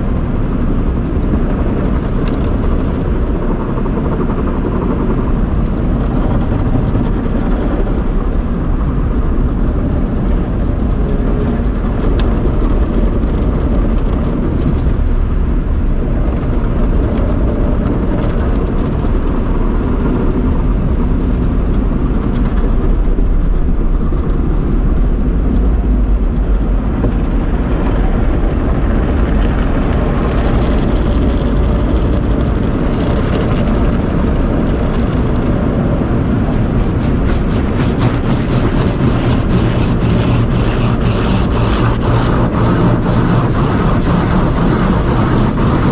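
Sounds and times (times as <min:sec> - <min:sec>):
car wash machinery rumbling: 0:33.9 - 0:45.9.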